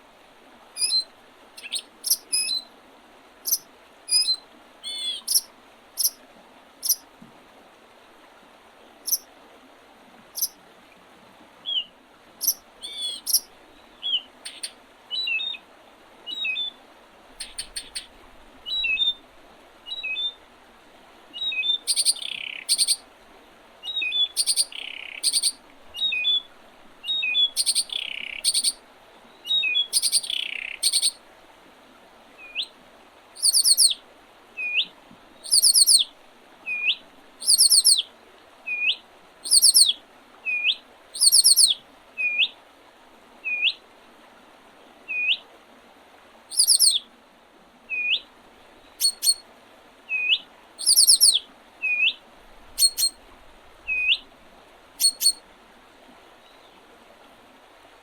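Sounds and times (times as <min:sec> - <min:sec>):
faint steady hiss: 0:00.0 - 0:58.0
high rapid bird trills: 0:00.8 - 0:01.0, 0:01.6 - 0:02.6, 0:03.5 - 0:06.2, 0:12.4 - 0:14.7, 0:17.4 - 0:18.1, 0:21.5 - 0:23.0, 0:23.9 - 0:26.4, 0:27.1 - 0:28.8, 0:29.5 - 0:31.2, 0:33.4 - 0:34.0, 0:35.4 - 0:36.0, 0:37.4 - 0:38.0, 0:39.4 - 0:39.9, 0:41.2 - 0:41.8, 0:46.5 - 0:47.0, 0:49.0 - 0:49.4, 0:50.8 - 0:52.1, 0:52.7 - 0:53.2, 0:55.0 - 0:55.4
swooping bird call: 0:00.8 - 0:02.6, 0:03.5 - 0:06.2, 0:21.4 - 0:23.0, 0:23.9 - 0:26.5, 0:27.1 - 0:28.8, 0:29.5 - 0:31.2, 0:33.4 - 0:34.0, 0:35.4 - 0:36.1, 0:36.7 - 0:38.0, 0:38.7 - 0:42.5, 0:46.5 - 0:47.0, 0:49.0 - 0:49.4, 0:50.1 - 0:53.2, 0:53.9 - 0:54.2, 0:55.0 - 0:55.4.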